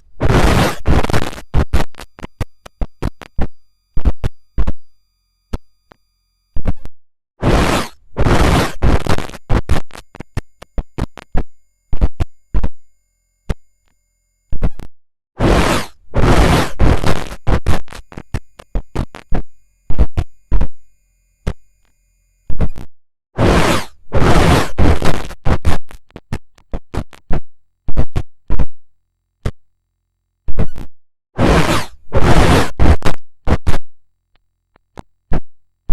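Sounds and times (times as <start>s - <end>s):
bursts of harsh noise: 0.0s - 4.4s, 7.4s - 12.8s, 15.4s - 20.8s, 23.4s - 25.4s, 31.4s - 33.0s.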